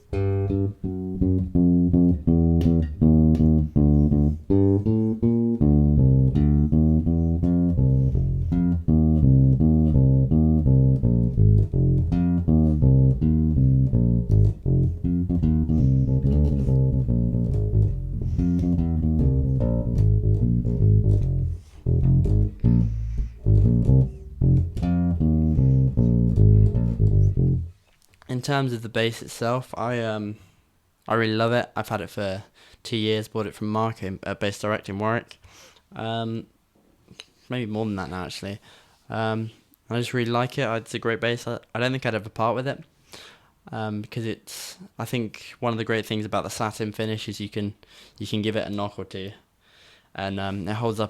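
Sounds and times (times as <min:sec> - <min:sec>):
plucked bass guitar jazz line: 0:00.0 - 0:27.8.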